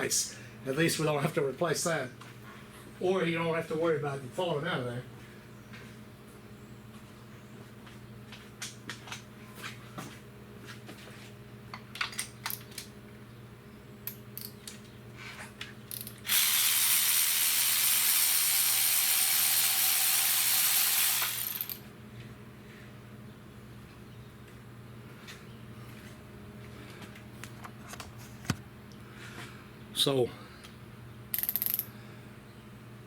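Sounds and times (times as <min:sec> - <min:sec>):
ratchet wrench clicking: 0:15.9 - 0:21.8, 0:31.3 - 0:31.9
loud steady hiss: 0:16.2 - 0:21.8.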